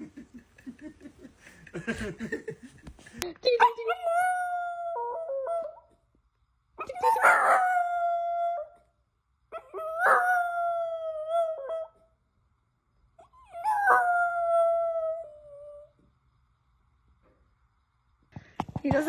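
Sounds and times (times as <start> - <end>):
dog howling: 6.8 - 8.8, 9.6 - 12.0, 13.4 - 15.9.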